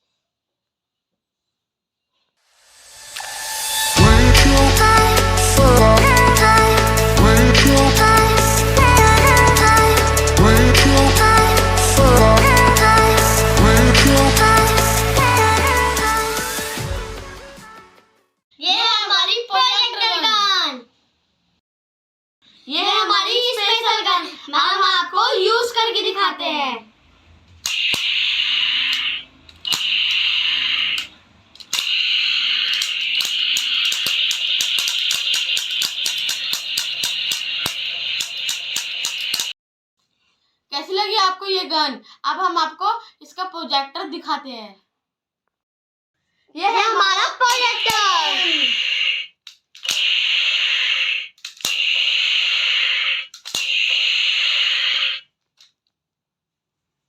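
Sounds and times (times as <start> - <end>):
toy gun buzzing blast: 27.6 - 39.6, 47.4 - 55.3.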